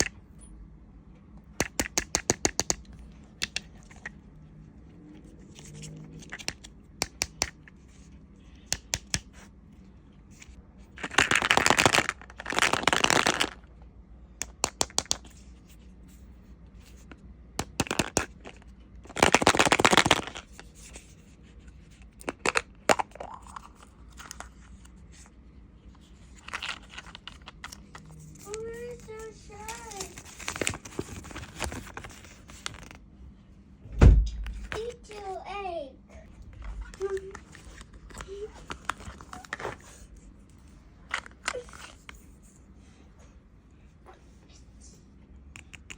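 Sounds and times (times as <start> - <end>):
plastic clicks and taps: 1.6 - 4.1, 6.2 - 7.6, 8.7 - 9.3, 14.4 - 15.4
wrapper crinkling and tearing: 11.0 - 13.6, 19.1 - 20.6.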